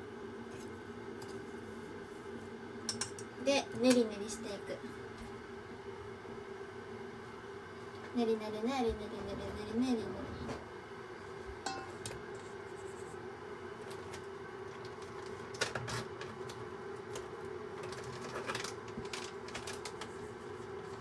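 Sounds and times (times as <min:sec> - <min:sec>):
steady background hum: 0:00.0 - 0:21.0.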